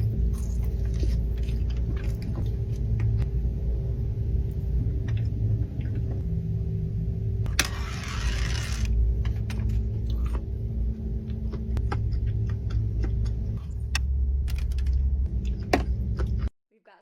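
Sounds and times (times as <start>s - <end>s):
crunchy chewing: 0.0s - 3.2s
low rumble: 0.0s - 16.5s.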